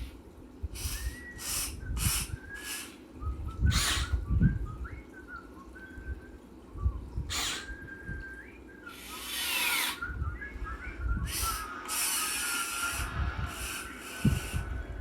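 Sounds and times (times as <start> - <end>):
small electric motors whining: 0.7 - 3.0, 7.3 - 7.7, 8.9 - 10.1, 11.2 - 15.0.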